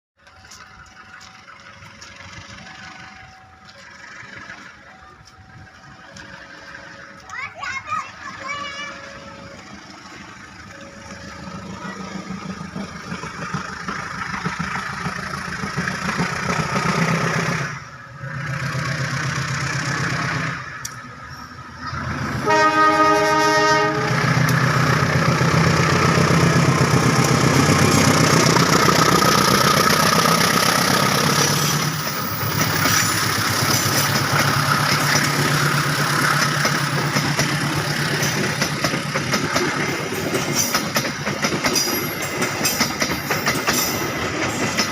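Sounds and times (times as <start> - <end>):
diesel locomotive engine running: 0.2 - 44.9
locomotive horn blast: 21.9 - 24.5.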